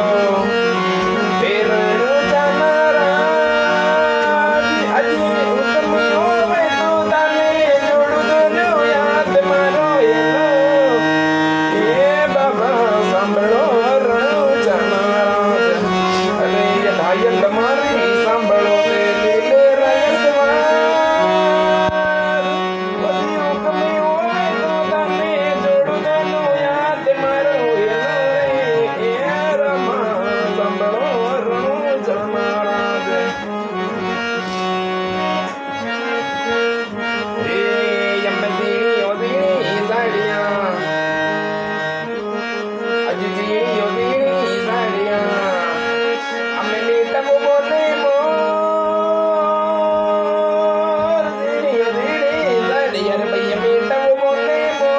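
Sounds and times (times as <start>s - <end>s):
reedy melody: 0.0s - 54.9s.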